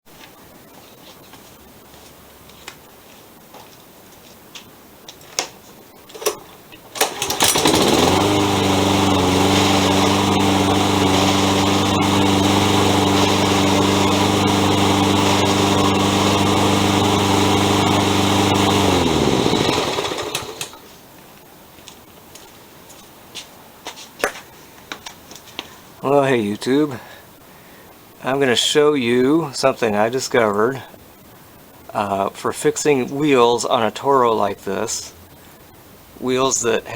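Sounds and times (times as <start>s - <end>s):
lawn mower engine running: 6.2s - 20.9s
grinding: 7.0s - 20.8s.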